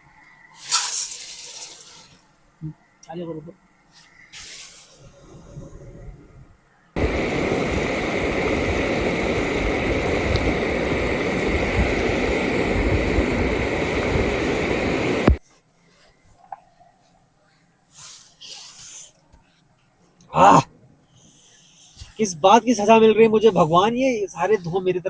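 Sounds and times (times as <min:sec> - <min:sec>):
click: 0:10.3 - 0:10.5.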